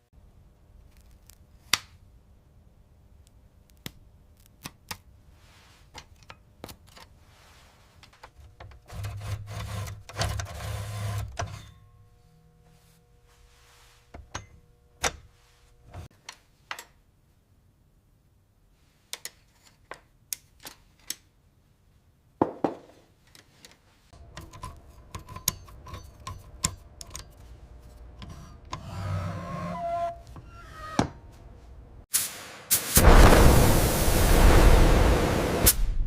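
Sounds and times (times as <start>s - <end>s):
low steady hum: 11.3s - 16.1s.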